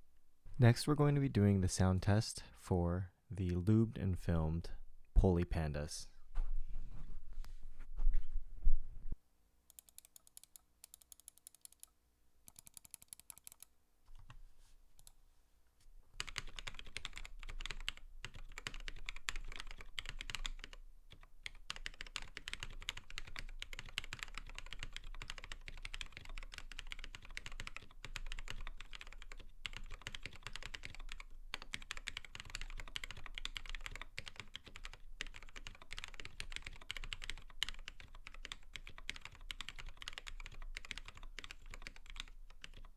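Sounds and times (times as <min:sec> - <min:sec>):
typing on mechanical keyboard: 0:09.7 - 0:11.9, 0:12.5 - 0:14.4, 0:16.2 - 0:42.9.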